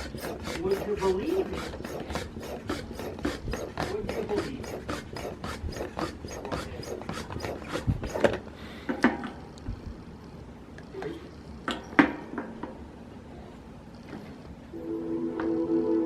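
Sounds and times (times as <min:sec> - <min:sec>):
rhythmic scraping strokes: 0:00.0 - 0:08.3.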